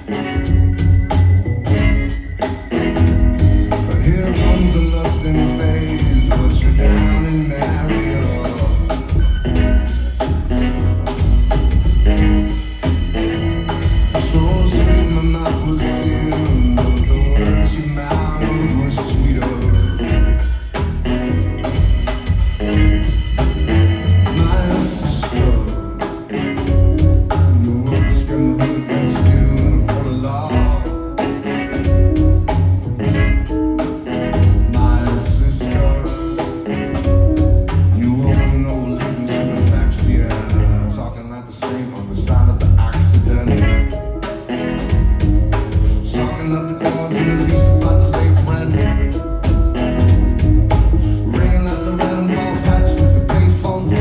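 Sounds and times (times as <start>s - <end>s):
heavy bass line: 0.0s - 26.0s, 26.6s - 41.2s, 42.1s - 46.6s, 47.2s - 54.0s
drum kit beat: 0.0s - 54.0s
person singing: 3.7s - 9.9s, 13.6s - 20.5s, 23.8s - 32.3s, 34.4s - 44.6s, 46.0s - 50.2s, 50.8s - 54.0s.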